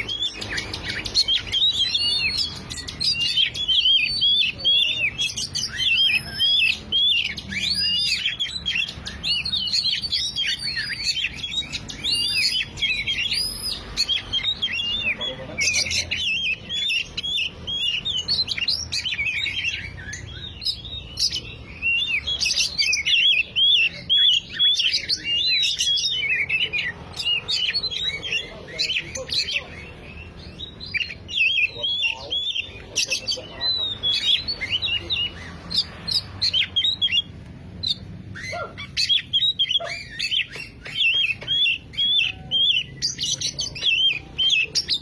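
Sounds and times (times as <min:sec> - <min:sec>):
bird singing whistled phrases: 0:00.0 - 0:45.0.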